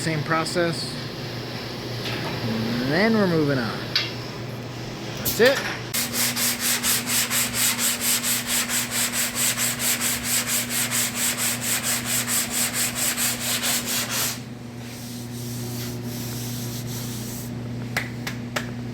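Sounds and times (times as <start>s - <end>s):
steady low hum: 0.0s - 18.9s
hand sanding strokes on steel: 6.0s - 17.6s.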